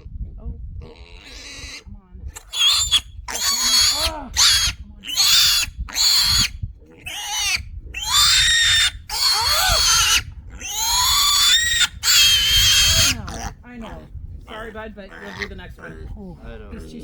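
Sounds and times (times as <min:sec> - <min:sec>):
piglet squealing: 0:00.9 - 0:01.8, 0:02.4 - 0:13.6, 0:15.1 - 0:16.0.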